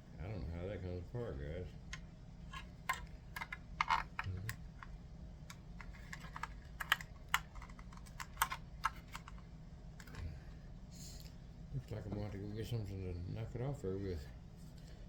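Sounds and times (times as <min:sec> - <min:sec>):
plastic parts clicking and tapping: 0:02.5 - 0:04.9, 0:05.5 - 0:09.4.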